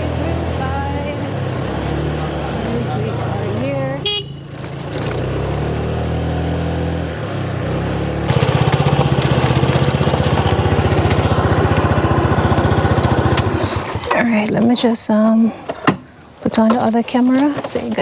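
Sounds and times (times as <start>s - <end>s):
motor scooter engine idling: 0.0s - 14.4s.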